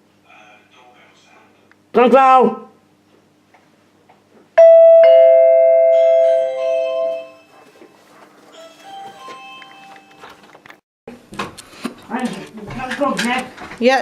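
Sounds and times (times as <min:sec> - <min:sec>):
two-note doorbell chime: 0:04.6 - 0:07.6, 0:08.6 - 0:10.3.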